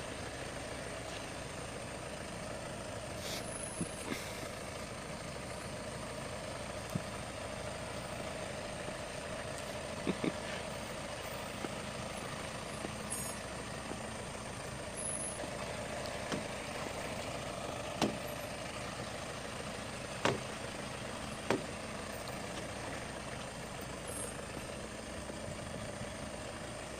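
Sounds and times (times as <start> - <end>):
heavy vehicle engine running: 0.0 - 26.9
short sharp knocks: 20.2 - 20.6, 21.5 - 21.7.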